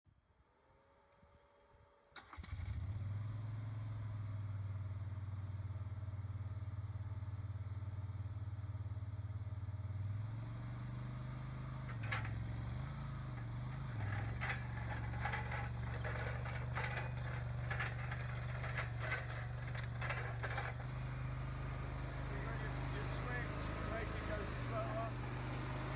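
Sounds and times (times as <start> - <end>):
skid steer engine running: 9.6 - 25.9
clatters and knocks: 11.9 - 25.9.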